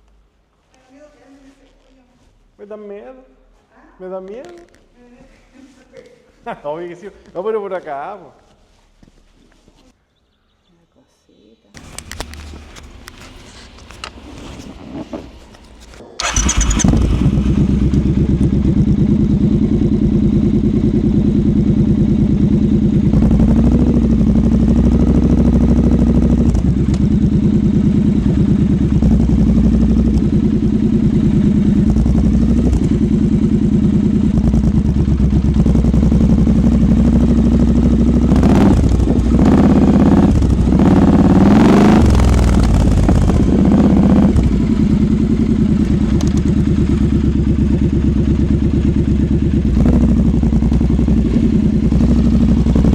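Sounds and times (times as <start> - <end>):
engine revving: 11.8 - 52.9
motorcycle engine starting and idling: 11.8 - 52.9.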